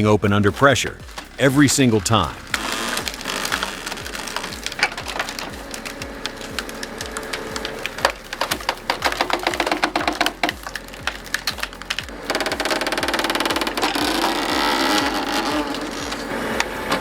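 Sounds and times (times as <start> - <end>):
log cracking and splintering: 0.0 - 17.0.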